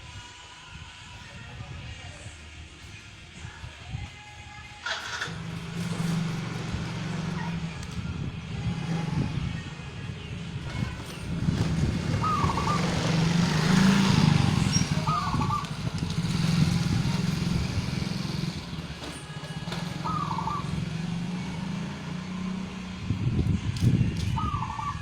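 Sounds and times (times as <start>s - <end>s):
engine humming: 0.0s - 25.0s
dove cooing: 10.7s - 17.5s, 19.6s - 21.5s, 24.4s - 25.0s.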